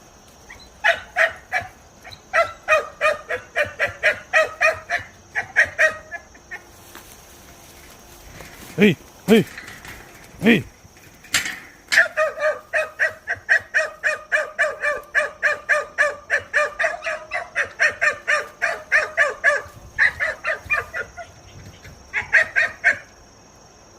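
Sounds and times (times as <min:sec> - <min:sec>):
puppy yapping high-pitched: 0:00.5 - 0:06.2, 0:11.9 - 0:21.3.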